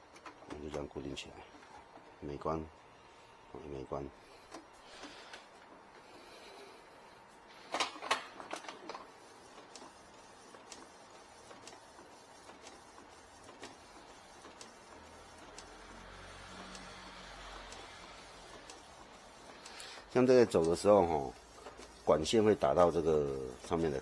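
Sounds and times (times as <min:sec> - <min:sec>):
inkjet printer running: 0:08.9 - 0:24.0
faint ticking of tubes: 0:19.5 - 0:24.0.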